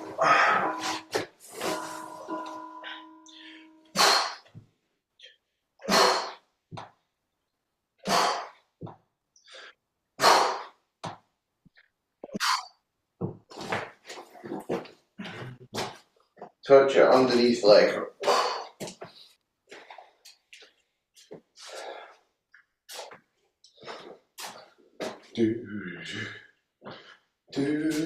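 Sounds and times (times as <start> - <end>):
steady tone: 0.0 - 4.2.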